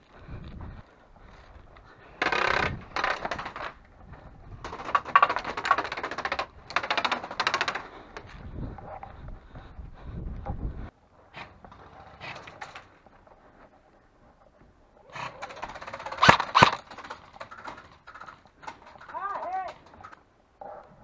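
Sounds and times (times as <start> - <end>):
airsoft gun firing full auto: 15.8 - 16.9.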